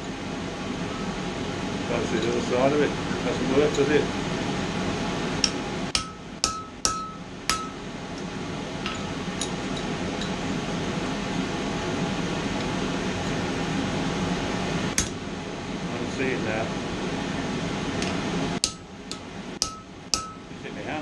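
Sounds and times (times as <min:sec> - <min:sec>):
hammer striking steel on anvil: 0:05.4 - 0:07.8, 0:18.6 - 0:20.5.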